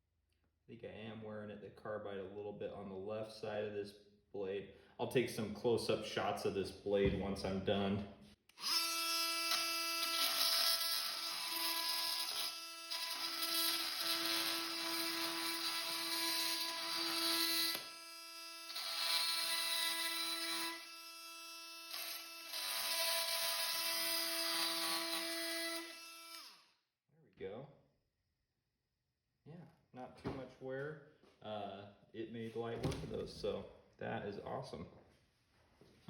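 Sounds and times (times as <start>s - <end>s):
oscillating multi-tool buzzing: 8.5s - 26.7s.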